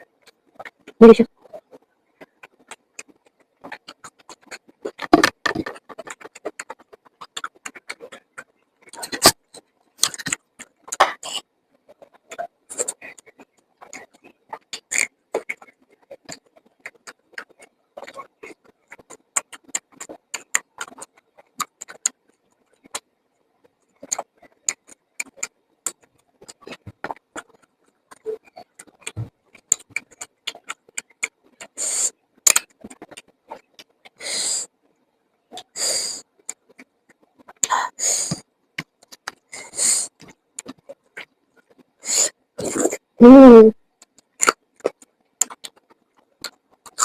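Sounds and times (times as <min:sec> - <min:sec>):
wet chewing: 0:02.3 - 0:23.1, 0:23.9 - 0:34.2, 0:44.0 - 0:47.0.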